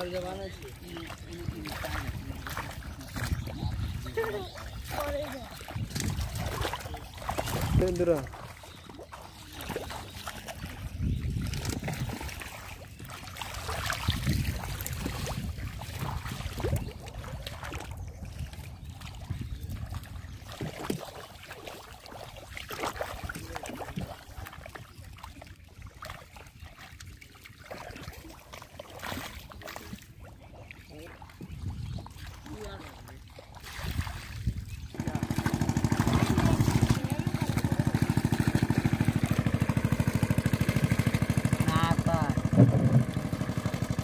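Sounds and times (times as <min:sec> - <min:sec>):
water sloshing and splashing: 0:00.0 - 0:44.0.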